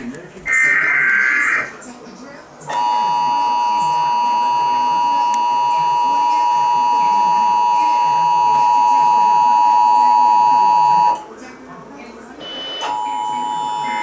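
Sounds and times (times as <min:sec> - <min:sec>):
steady two-tone alert signal: 0:02.7 - 0:11.2, 0:12.4 - 0:14.0.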